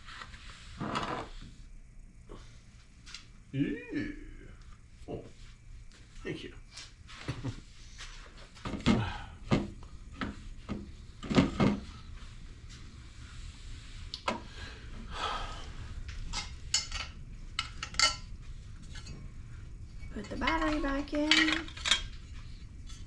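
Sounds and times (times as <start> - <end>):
tools and parts knocking and clinking: 16.3 - 19.2, 20.0 - 22.2.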